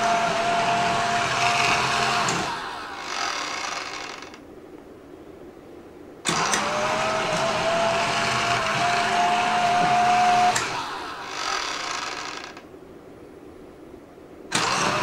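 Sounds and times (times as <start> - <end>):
robot vacuum motors whining: 0.0 - 4.4, 6.3 - 12.6, 14.5 - 15.0.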